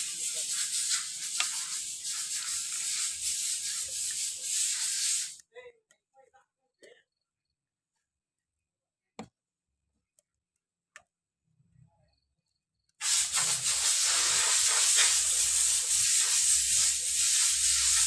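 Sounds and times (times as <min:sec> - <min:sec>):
pressurized air hiss: 0:00.0 - 0:05.4, 0:13.0 - 0:18.0.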